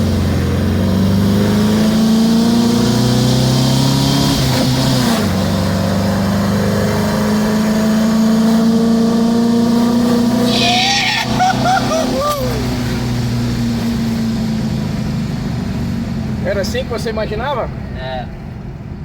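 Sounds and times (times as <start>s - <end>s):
car engine accelerating hard: 0.0s - 18.8s.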